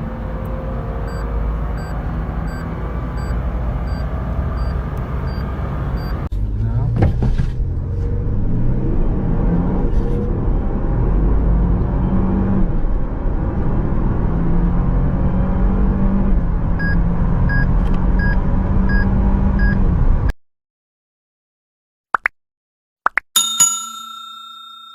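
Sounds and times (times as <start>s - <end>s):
car engine accelerating: 0.0s - 20.3s
short beeps: 1.1s - 6.2s.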